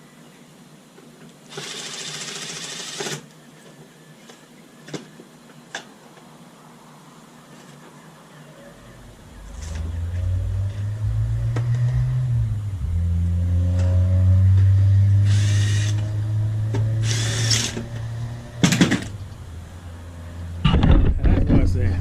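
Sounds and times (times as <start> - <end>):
cordless drill humming: 15.2 - 16.1, 16.9 - 18.0.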